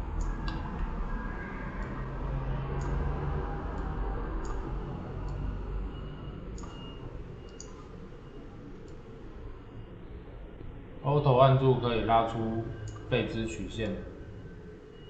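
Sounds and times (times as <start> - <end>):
low background hum: 0.0 - 15.0
computer mouse clicking: 2.8 - 3.1, 3.7 - 4.7, 6.6 - 7.8, 12.8 - 13.1.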